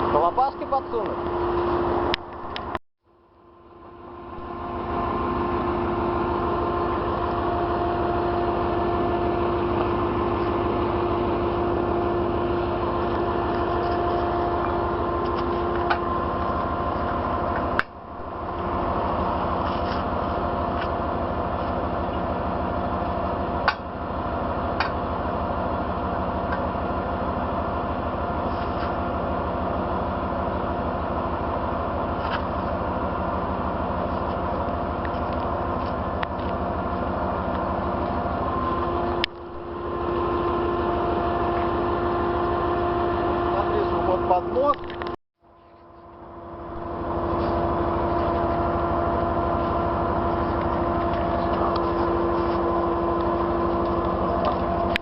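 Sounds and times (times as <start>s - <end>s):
steady whine: 0.0s - 55.0s
truck engine running: 0.0s - 55.0s.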